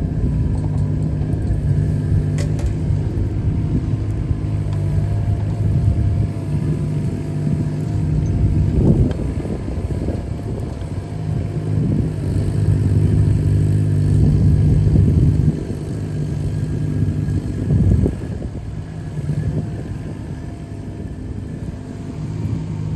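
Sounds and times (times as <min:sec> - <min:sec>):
excavator diesel engine working: 0:00.0 - 0:22.9.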